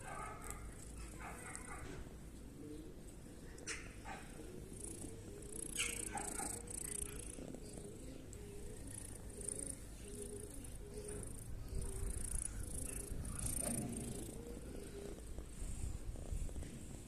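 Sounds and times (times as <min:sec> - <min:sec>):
cat purring: 0:04.2 - 0:17.0.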